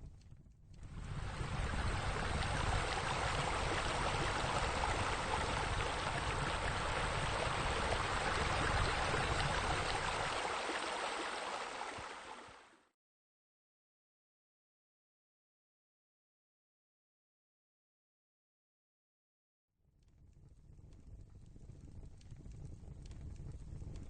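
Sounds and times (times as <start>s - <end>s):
waterfall splashing into pool: 1.1s - 12.7s.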